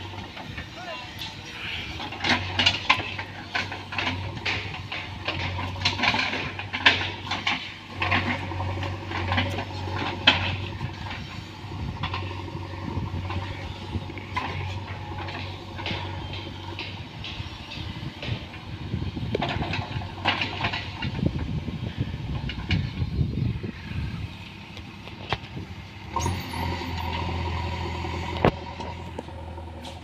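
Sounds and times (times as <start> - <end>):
diesel engine humming: 0.0 - 30.0
metallic clanks and knocks: 2.0 - 11.3, 14.2 - 18.6.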